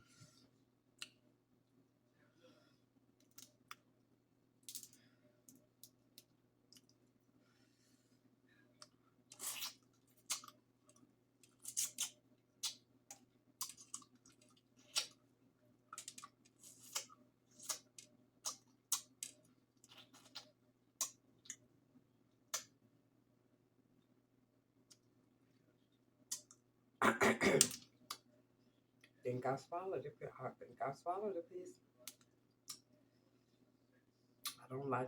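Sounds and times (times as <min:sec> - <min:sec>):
wet chewing clicks and smacks: 0:09.6 - 0:15.2, 0:26.3 - 0:26.6.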